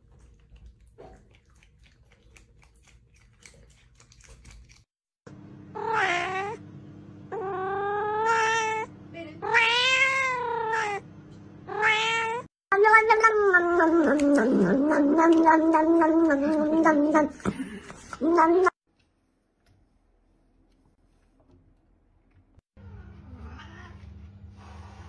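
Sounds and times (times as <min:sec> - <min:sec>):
cat meowing: 0:05.8 - 0:06.6, 0:07.3 - 0:11.0, 0:11.7 - 0:17.3, 0:23.4 - 0:24.0.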